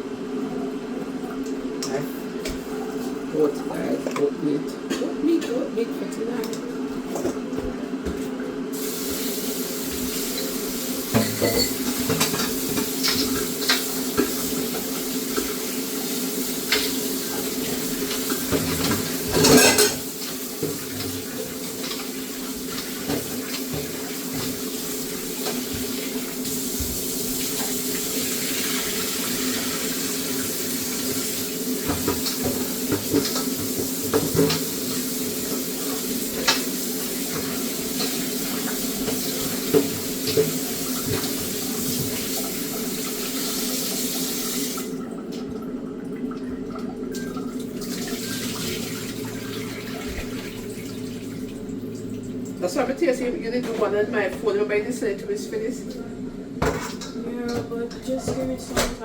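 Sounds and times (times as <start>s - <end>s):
tap running into a sink: 8.8s - 45.6s, 46.3s - 51.3s
pot or bowl clinking: 11.1s - 12.2s, 18.8s - 20.1s.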